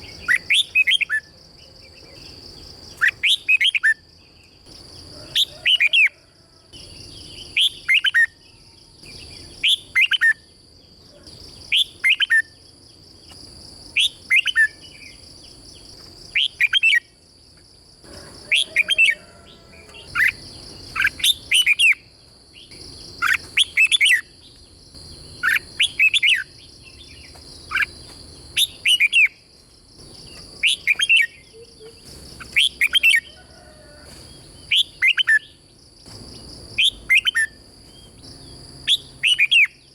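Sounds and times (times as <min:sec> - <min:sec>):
bulbul whistled song: 0:00.0 - 0:01.8, 0:07.4 - 0:08.4, 0:09.2 - 0:10.5, 0:28.6 - 0:29.4, 0:34.7 - 0:35.5, 0:38.3 - 0:39.8
steady high-pitched hiss: 0:00.0 - 0:39.9.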